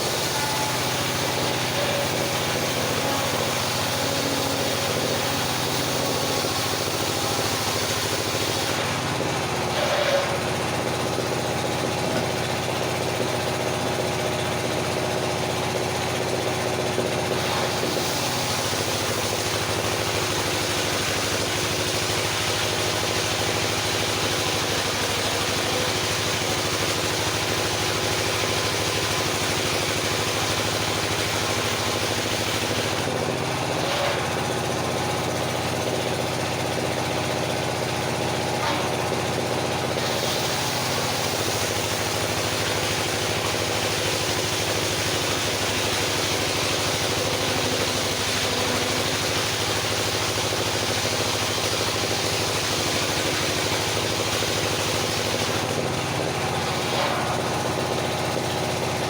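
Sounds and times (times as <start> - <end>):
circular sawmill running: 0.0 - 59.0.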